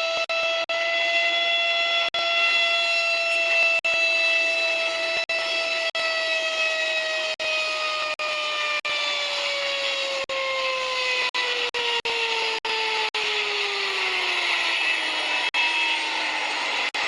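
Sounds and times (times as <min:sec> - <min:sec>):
helicopter engine whine: 0:00.0 - 0:17.0.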